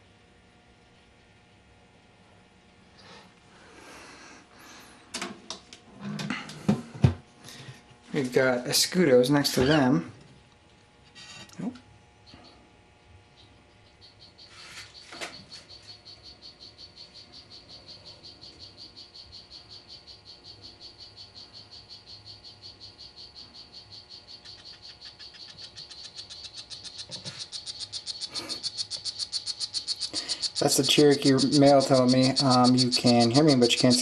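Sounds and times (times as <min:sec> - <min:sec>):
frog trilling high chirps: 0:13.4 - 0:34.0.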